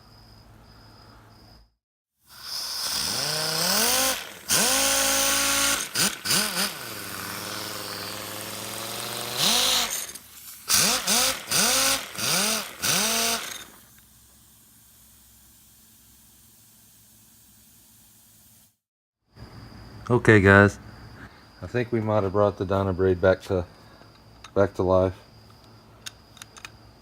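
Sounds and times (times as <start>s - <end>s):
air hiss: 2.3s - 5.7s, 12.6s - 18.8s
pneumatic sander whining: 2.3s - 14.7s.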